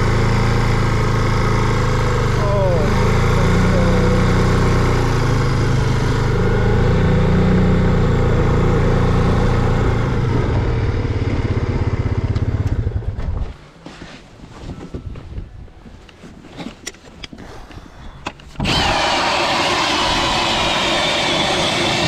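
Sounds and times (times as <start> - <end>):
ice auger engine running: 0.0 - 12.7, 18.6 - 22.0.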